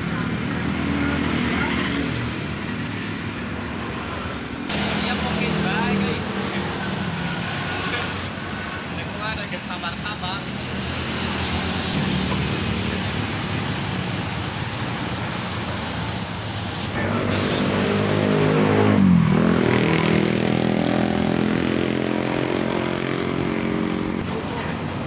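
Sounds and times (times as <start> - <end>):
passing vehicle engine: 0.0 - 25.0
road traffic: 0.0 - 25.0.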